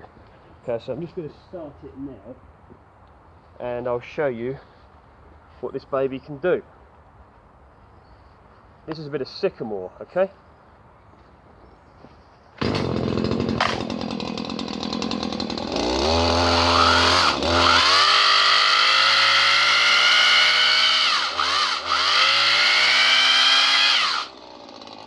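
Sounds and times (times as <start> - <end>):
two-stroke engine revving: 12.6 - 25.0.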